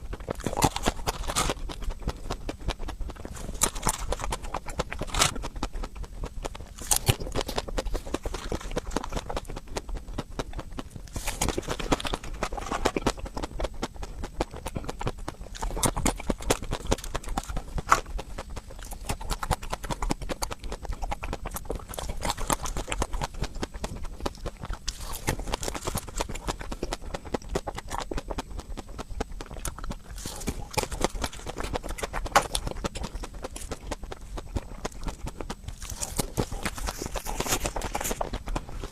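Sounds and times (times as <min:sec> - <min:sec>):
crunchy ice cream chewing: 0:00.0 - 0:38.9.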